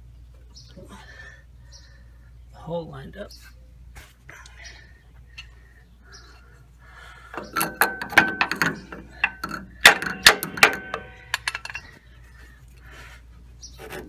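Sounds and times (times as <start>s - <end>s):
metallic clanks of jack: 7.4s - 11.9s.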